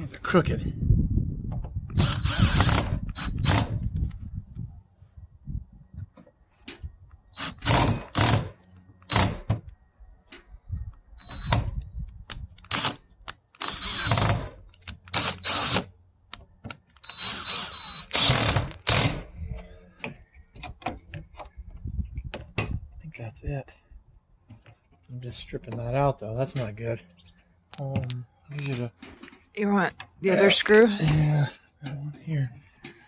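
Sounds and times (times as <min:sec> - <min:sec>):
screwdriver ratcheting: 0:01.9 - 0:03.9, 0:12.3 - 0:15.9, 0:16.7 - 0:19.2.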